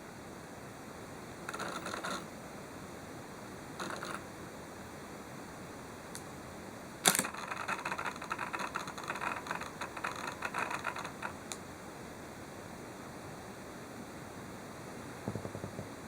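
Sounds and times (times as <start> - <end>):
camera lens rattling: 7.1 - 11.4.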